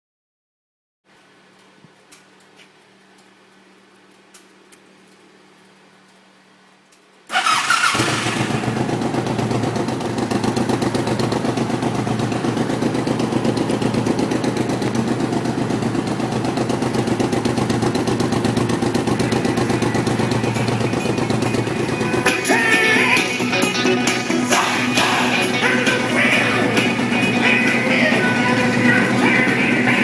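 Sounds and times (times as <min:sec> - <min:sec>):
motorcycle engine starting and idling: 0:07.3 - 0:30.0.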